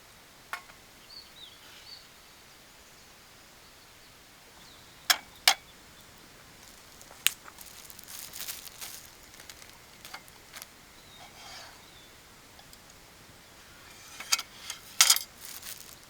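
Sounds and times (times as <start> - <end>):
soft rustle: 6.2 - 12.0, 12.7 - 16.0.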